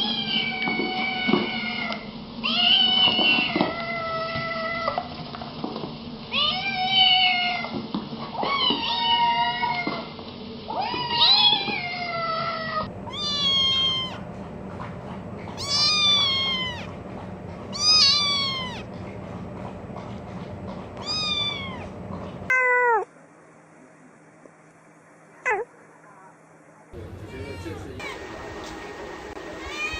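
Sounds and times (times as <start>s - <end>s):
kittens meowing: 10.7s - 14.3s, 15.5s - 17.0s, 17.7s - 18.9s, 21.0s - 21.9s, 22.5s - 23.1s, 25.5s - 25.7s, 27.2s - 28.2s, 29.6s - 29.9s.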